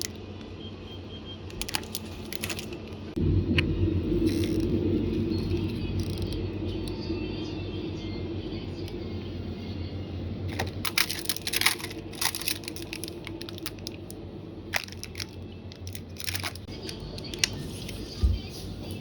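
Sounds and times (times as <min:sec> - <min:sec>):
plastic packaging crinkling: 0:01.5 - 0:03.1, 0:04.2 - 0:06.4, 0:10.5 - 0:18.1.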